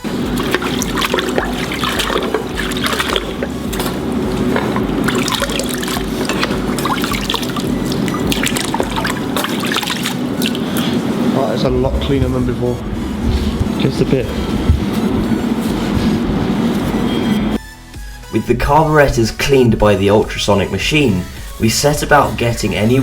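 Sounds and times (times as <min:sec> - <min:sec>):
water trickling and splashing: 0:00.0 - 0:11.1.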